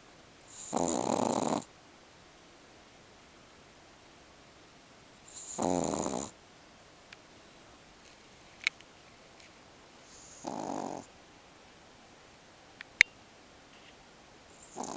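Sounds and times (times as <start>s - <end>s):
pet snoring: 0.4s - 1.7s, 5.2s - 6.4s, 10.0s - 11.1s, 14.5s - 14.9s.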